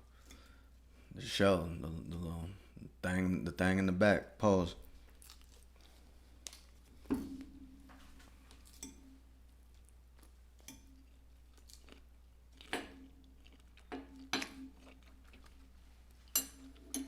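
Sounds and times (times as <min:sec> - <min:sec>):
people chewing food: 0:04.9 - 0:07.1, 0:08.1 - 0:17.0.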